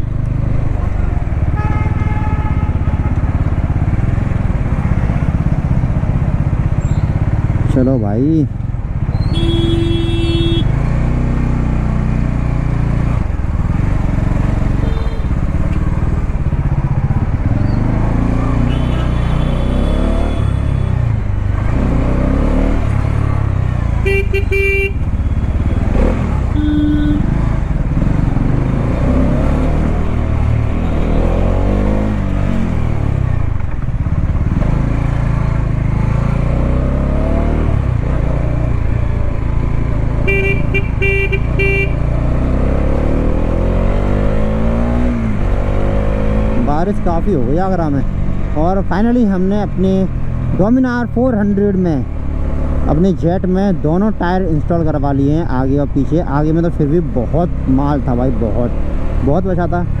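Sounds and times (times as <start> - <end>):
motorcycle engine revving: 0.0 - 60.0
road and wind noise: 0.0 - 60.0
vehicle horns honking: 1.4 - 3.6, 9.2 - 10.8, 14.6 - 15.9, 18.4 - 21.1, 24.0 - 27.8, 40.2 - 42.1.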